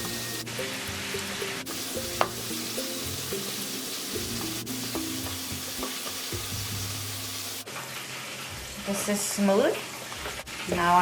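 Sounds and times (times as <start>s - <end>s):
fish sizzling in hot oil: 0.0s - 7.7s
background music: 0.0s - 11.0s.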